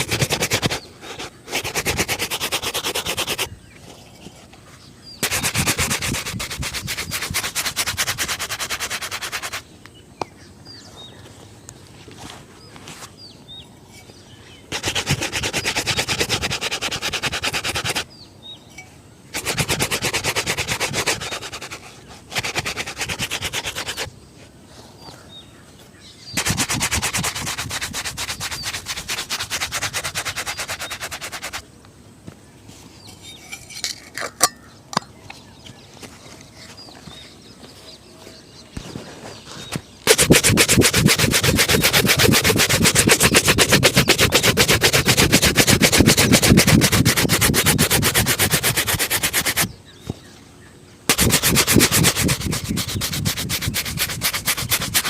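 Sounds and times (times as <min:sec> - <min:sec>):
brush buffing a shoe: 0:00.0 - 0:04.4, 0:05.2 - 0:09.6, 0:14.7 - 0:18.1, 0:19.3 - 0:24.1, 0:26.4 - 0:31.6, 0:40.0 - 0:49.7, 0:51.1 - 0:55.0.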